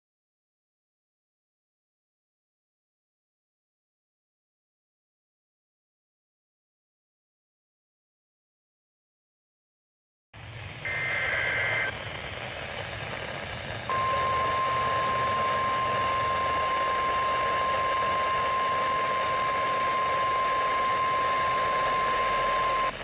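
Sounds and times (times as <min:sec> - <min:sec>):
radio hiss: 0:10.4 - 0:23.0
steady alarm tone: 0:10.8 - 0:12.0, 0:13.9 - 0:23.0
screechy two-tone data burst: 0:10.9 - 0:12.0, 0:13.9 - 0:23.0.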